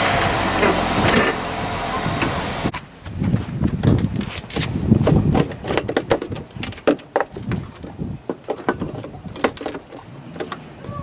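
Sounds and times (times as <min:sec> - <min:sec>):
metallic clinks and rattles: 0:03.8 - 0:04.7, 0:06.1 - 0:11.0
high ringing clinks: 0:07.3 - 0:10.6.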